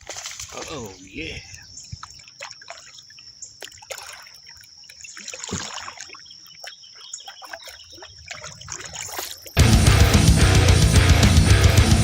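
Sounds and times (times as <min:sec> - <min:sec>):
water trickling and dripping: 0:00.0 - 0:09.6.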